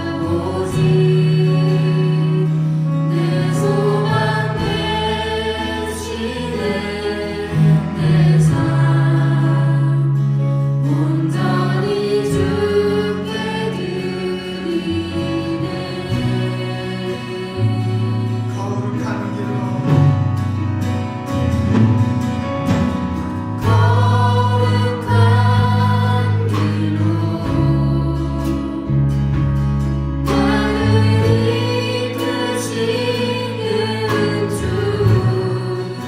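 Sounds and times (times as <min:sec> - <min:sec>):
singers in harmony: 0:00.0 - 0:20.0, 0:23.5 - 0:36.0
held bass notes: 0:00.0 - 0:36.0
band hits: 0:18.5 - 0:27.8.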